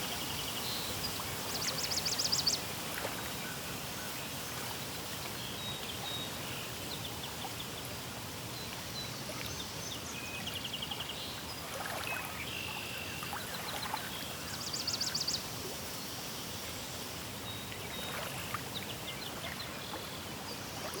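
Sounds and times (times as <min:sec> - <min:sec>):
water rushing: 0:11.6 - 0:12.5, 0:17.8 - 0:21.0.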